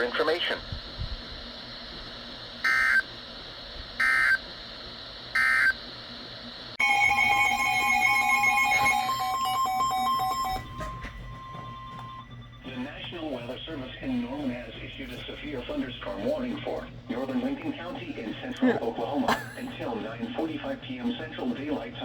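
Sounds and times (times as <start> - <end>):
screeching data bursts: 2.6 - 3.1, 4.0 - 4.4, 5.4 - 5.8, 6.8 - 12.7
electronic alert tone: 6.8 - 12.6.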